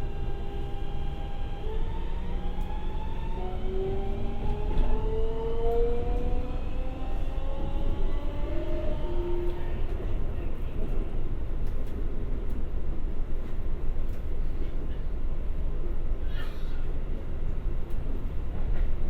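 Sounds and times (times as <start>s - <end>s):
train inverter rising tones: 0.0s - 9.6s
train rolling noise: 0.0s - 16.2s, 16.8s - 19.0s
faint rail clicks: 11.6s - 12.7s.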